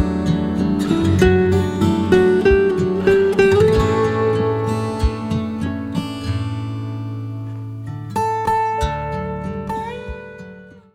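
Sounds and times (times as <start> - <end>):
steady beat: 0.0 - 5.8
acoustic guitar playing: 0.0 - 10.9.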